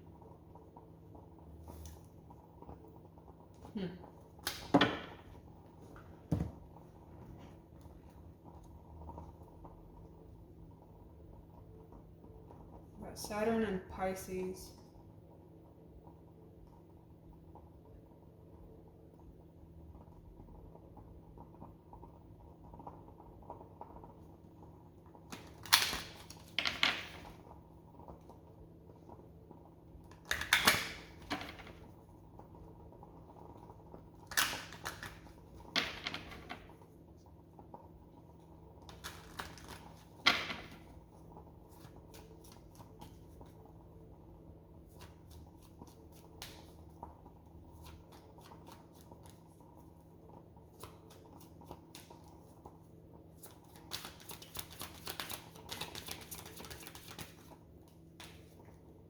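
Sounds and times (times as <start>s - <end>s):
cards being shuffled: 34.3s - 36.6s, 38.9s - 40.9s, 47.7s - 49.4s, 53.4s - 58.6s.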